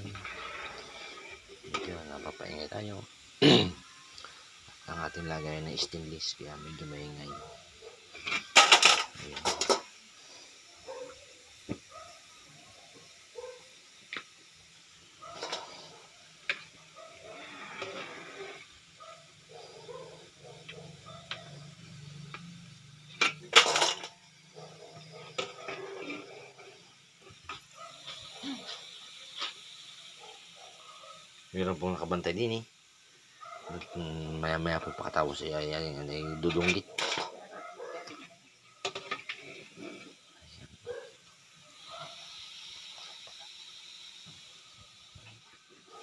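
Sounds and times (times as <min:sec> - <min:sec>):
pork frying in oil: 0:00.0 - 0:46.0
metal clinking on steel container: 0:08.2 - 0:09.9, 0:23.2 - 0:24.2.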